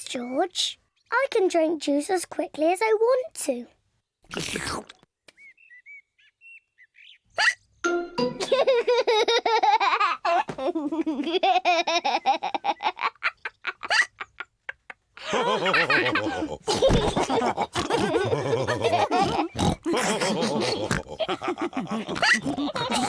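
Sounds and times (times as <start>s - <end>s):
cartoon characters laughing: 8.2s - 23.0s.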